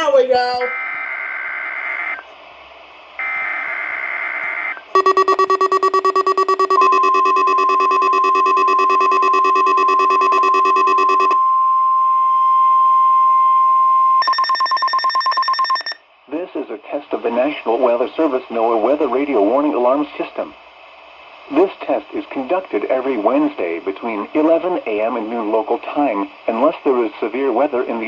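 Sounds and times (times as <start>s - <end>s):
alarm beeping rapidly: 5.0s - 11.4s, 14.2s - 16.0s
steady warning alarm tone: 5.0s - 16.0s.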